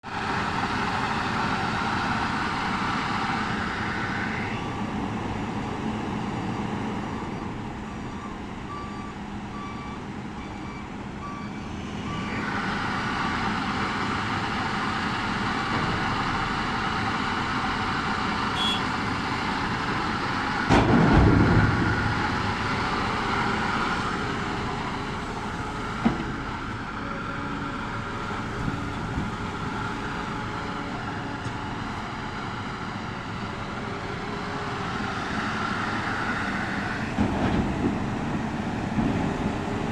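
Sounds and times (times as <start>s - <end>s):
excavator diesel engine running: 0.1s - 39.9s
heavy thump: 20.6s - 22.6s.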